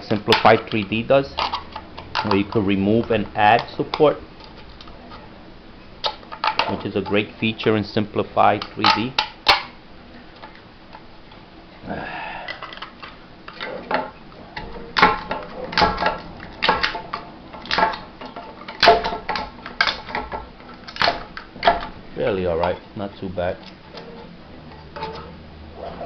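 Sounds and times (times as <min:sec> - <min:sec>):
plastic snapping clicks and cracks: 0:08.6 - 0:09.8, 0:12.5 - 0:21.9.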